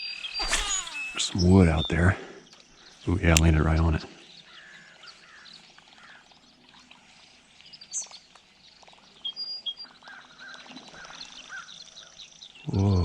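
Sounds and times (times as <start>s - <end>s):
birds chirping and calling: 0.0s - 13.0s
short sharp sounds: 0.2s - 1.4s.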